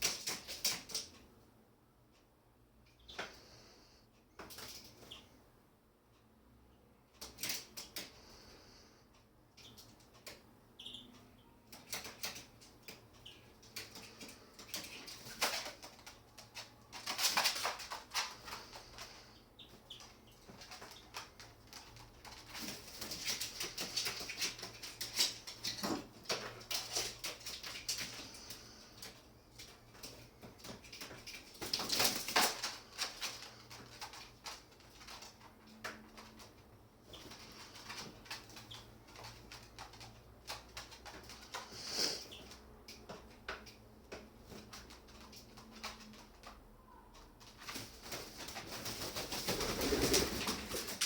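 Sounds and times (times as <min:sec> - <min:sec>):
birds flapping wings: 0:16.9 - 0:19.0, 0:47.6 - 0:51.0.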